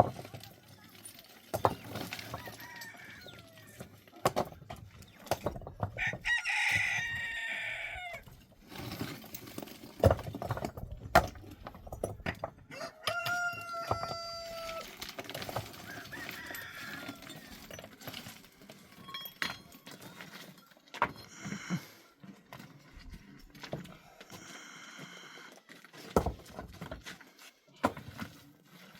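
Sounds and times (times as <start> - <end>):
rooster crowing: 2.2 - 3.8, 6.0 - 8.2, 12.7 - 14.9, 15.8 - 17.8.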